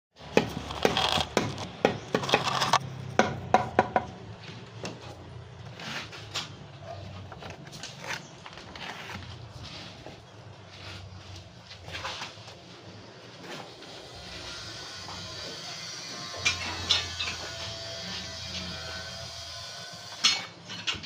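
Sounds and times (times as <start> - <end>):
woodworking knocks and clacks: 0.2 - 4.2
scraping and shuffling: 4.2 - 13.9.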